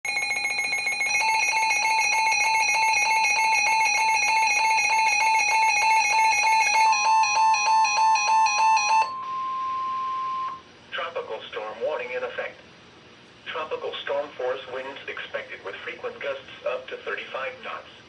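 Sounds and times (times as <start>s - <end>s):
steady single-pitch warning tone: 0.0s - 10.7s
repeating electronic beeps: 0.1s - 10.6s.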